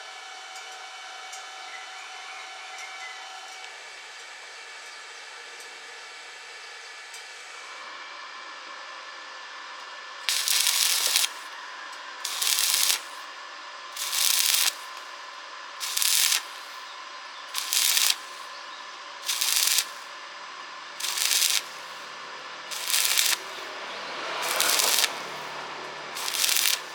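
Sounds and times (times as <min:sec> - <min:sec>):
welding arc crackling and hissing: 0:10.3 - 0:11.6, 0:12.2 - 0:13.3, 0:14.0 - 0:15.2, 0:15.8 - 0:18.6, 0:19.2 - 0:20.2, 0:21.0 - 0:23.7, 0:24.4 - 0:26.9.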